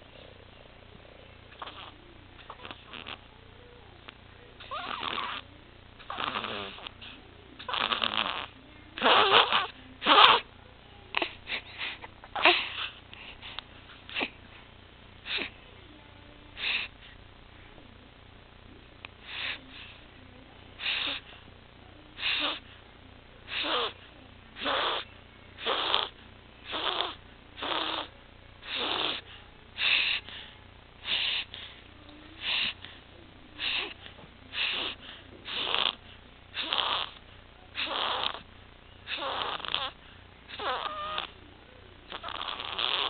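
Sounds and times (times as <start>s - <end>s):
infant harsh noisy breathing: 0.0s - 17.5s, 19.1s - 41.4s, 42.0s - 43.0s.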